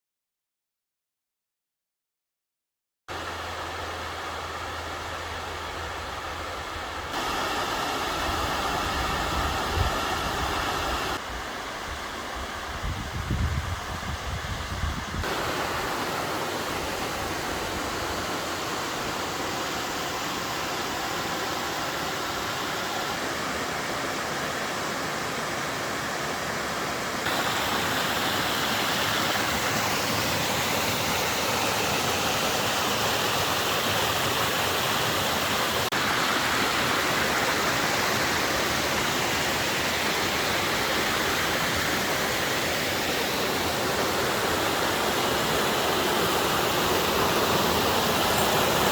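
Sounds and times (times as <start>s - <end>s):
waterfall pouring and splashing: 3.1s - 13.2s, 15.2s - 48.9s.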